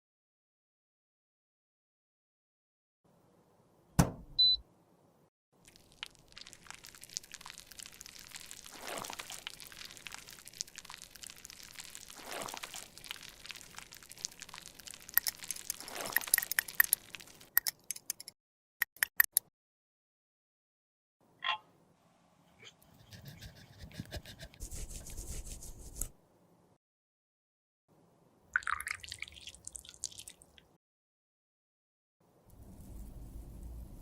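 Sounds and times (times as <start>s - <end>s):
sharp knock: 4.0s - 4.4s
makeup crackling and scraping: 5.7s - 18.3s.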